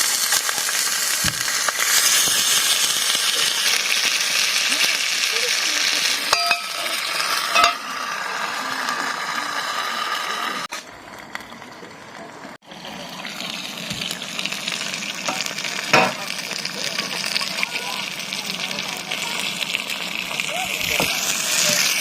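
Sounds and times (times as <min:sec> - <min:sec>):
food sizzling in a frying pan: 0:00.0 - 0:22.0.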